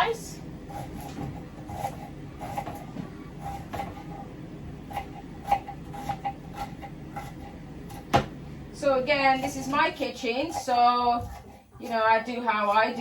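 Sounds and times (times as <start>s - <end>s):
knife chopping on cutting board: 0.7s - 4.2s, 4.9s - 8.4s, 10.5s - 11.6s.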